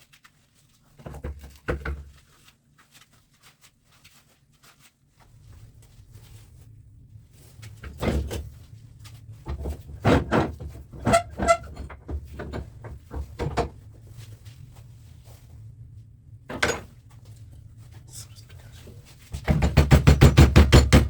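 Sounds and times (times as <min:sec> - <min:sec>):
tools knocking and clinking on metal: 0:16.5 - 0:16.9, 0:19.4 - 0:21.0.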